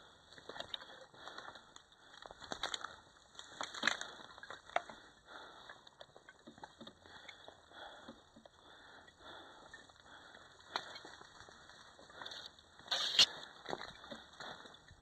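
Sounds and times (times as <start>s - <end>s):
footsteps crunching on rubble: 0.4s - 5.2s, 9.8s - 15.0s
gear rustling: 9.6s - 14.2s.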